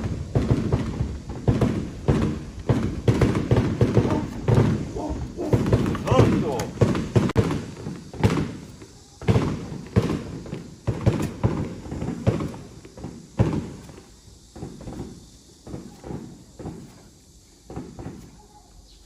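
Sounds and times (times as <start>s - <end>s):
heavy thumps and knocks: 0.0s - 8.6s.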